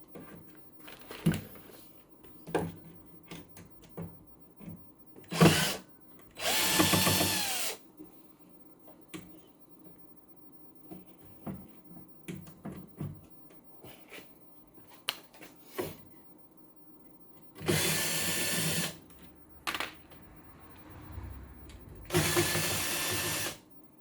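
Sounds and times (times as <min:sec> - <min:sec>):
power drill running: 0:05.3 - 0:05.8, 0:06.4 - 0:07.8, 0:17.7 - 0:19.0, 0:22.0 - 0:23.6.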